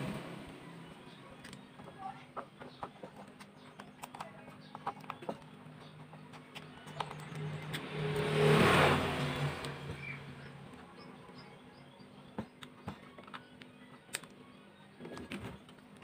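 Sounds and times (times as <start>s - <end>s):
loud rushing noise: 7.8s - 10.4s.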